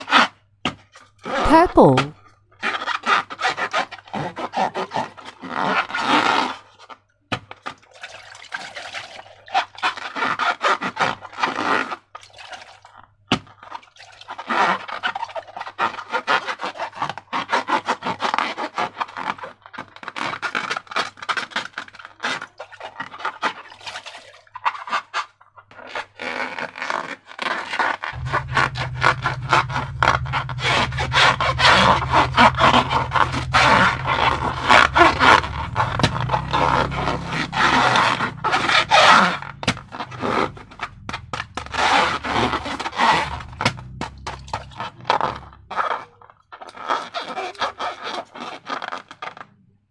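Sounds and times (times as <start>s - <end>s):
slime crackling and squelching: 28.1s - 49.2s
faint low hum: 28.2s - 45.8s.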